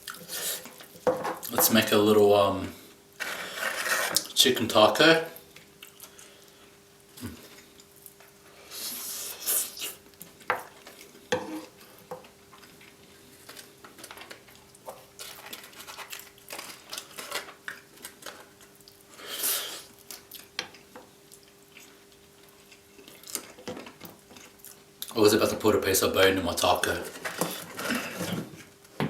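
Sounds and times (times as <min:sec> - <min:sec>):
faint steady hum: 0:00.0 - 0:29.0
taco shells crunching: 0:12.5 - 0:19.1.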